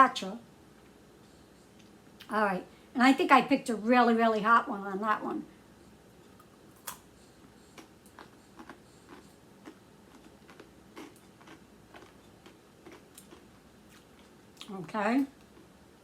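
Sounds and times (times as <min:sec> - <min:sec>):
chewing crunchy chips: 0:06.4 - 0:14.7.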